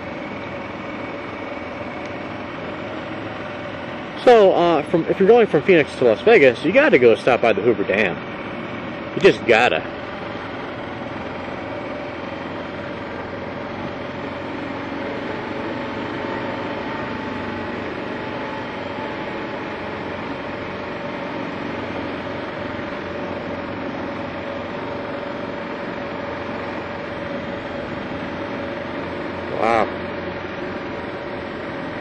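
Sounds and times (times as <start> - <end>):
motorcycle engine running: 0.0 - 32.0
wind and road noise: 0.0 - 32.0.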